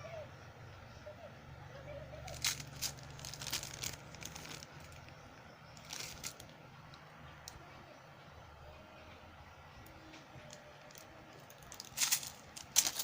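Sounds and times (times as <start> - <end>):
steady low hum: 0.0 - 13.0
plastic packaging crinkling: 2.3 - 5.2, 5.8 - 6.6, 10.5 - 13.0.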